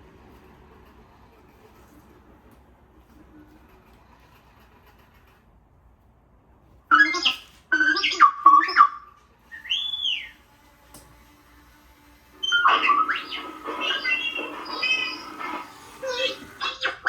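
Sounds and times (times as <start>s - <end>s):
electronic droid beeps and whistles: 6.9s - 10.4s, 12.4s - 17.0s.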